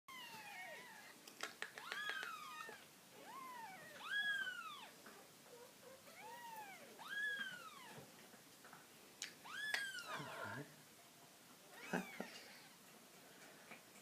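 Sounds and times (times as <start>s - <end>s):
kitten mewing: 0.1s - 4.9s.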